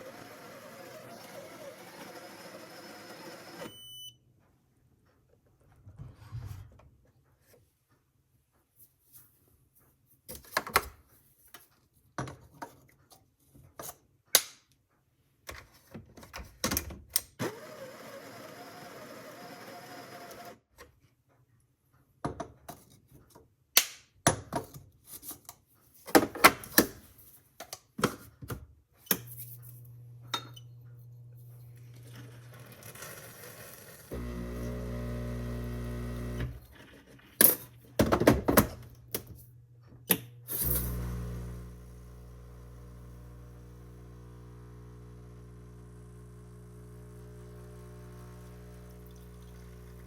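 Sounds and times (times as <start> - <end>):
low mechanical hum: 34.1 - 36.8, 37.6 - 50.0.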